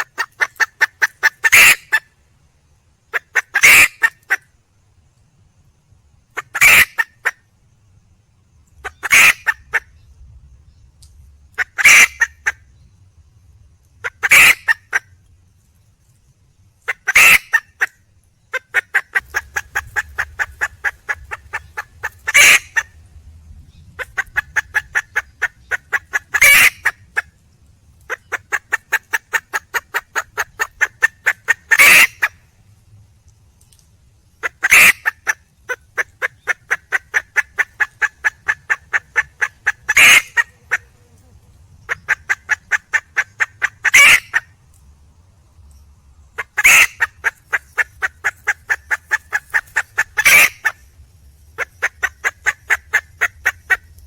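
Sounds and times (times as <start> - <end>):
hen clucking: 0.0 - 2.0, 3.1 - 4.4, 6.4 - 7.3, 8.8 - 9.8, 11.6 - 12.6, 14.0 - 15.0, 16.9 - 17.9, 18.5 - 22.9, 24.0 - 27.3, 28.1 - 32.4, 34.4 - 44.4, 46.4 - 50.8, 51.6 - 54.0
junglefowl hen loud call: 0.0 - 2.1, 3.1 - 4.5, 6.4 - 7.4, 8.8 - 10.0, 11.6 - 12.6, 14.0 - 15.1, 16.8 - 23.0, 24.0 - 27.4, 28.1 - 32.4, 34.4 - 44.5, 46.4 - 50.9, 51.6 - 54.0.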